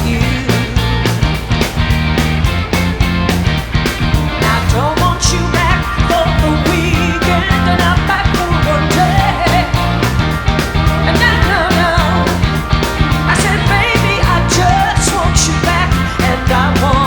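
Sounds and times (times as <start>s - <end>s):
person singing: 0.0s - 1.2s, 4.3s - 10.1s, 10.7s - 17.0s
rock drum beat: 0.0s - 17.0s.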